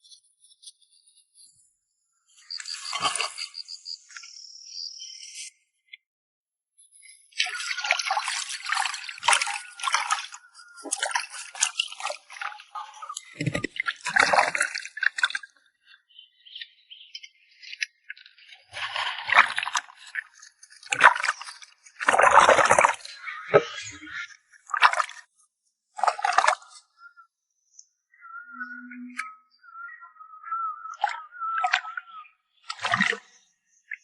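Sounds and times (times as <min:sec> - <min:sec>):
water splashing and trickling: 0:02.4 - 0:03.7, 0:07.3 - 0:16.0, 0:17.7 - 0:27.0, 0:30.9 - 0:33.4.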